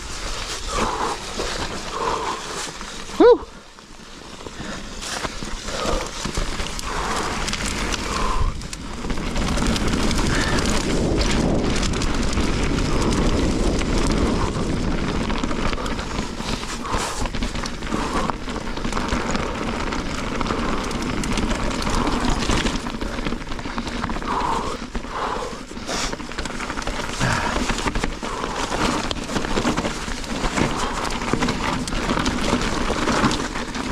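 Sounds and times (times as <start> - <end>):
bike knocking and rattling: 0.0 - 33.9
tyres rumbling on rock: 0.0 - 33.9
wind buffeting microphone: 5.8 - 22.8.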